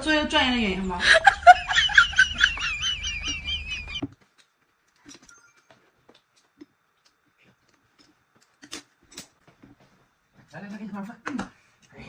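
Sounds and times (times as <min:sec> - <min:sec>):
high warbling laugh: 0:01.0 - 0:04.0.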